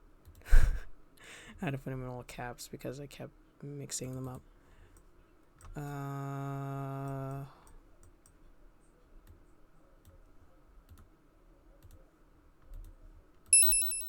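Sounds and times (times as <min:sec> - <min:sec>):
computer mouse clicks: 0:12.6 - 0:13.0
short high electronic beeps: 0:13.6 - 0:14.0.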